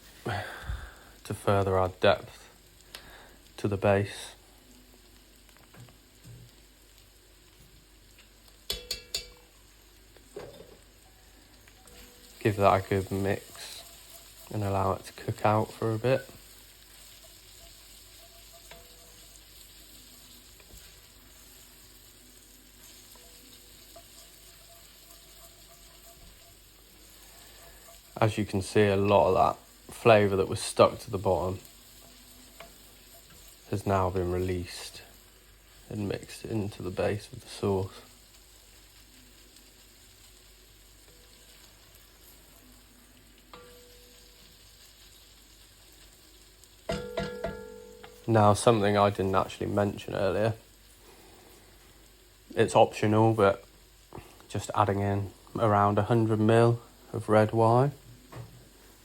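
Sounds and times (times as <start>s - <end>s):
sauce sizzling in pan: 0.0s - 59.0s
spoon clicking: 8.7s - 9.4s.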